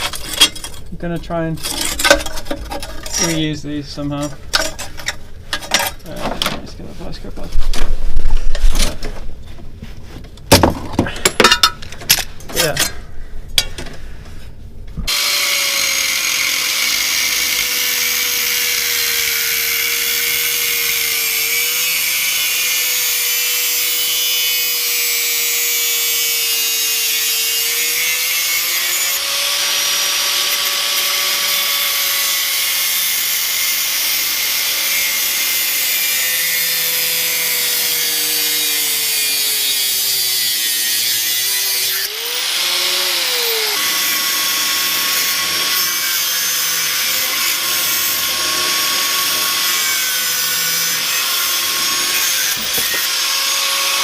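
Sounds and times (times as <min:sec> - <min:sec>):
angle grinder cutting metal: 0:15.1 - 0:54.0.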